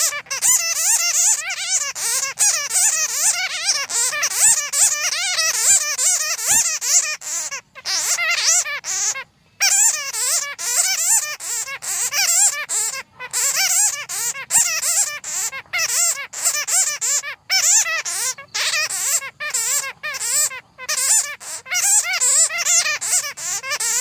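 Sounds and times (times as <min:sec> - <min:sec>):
bats squeaking: 0:00.0 - 0:24.0.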